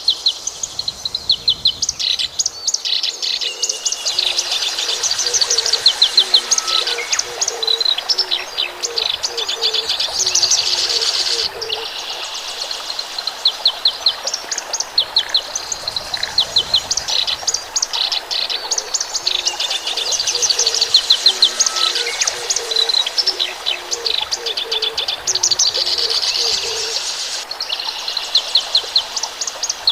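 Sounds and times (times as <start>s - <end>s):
birds chirping and singing: 1.2s - 12.0s, 15.8s - 27.4s
low bird call: 3.4s - 11.9s, 18.7s - 27.1s.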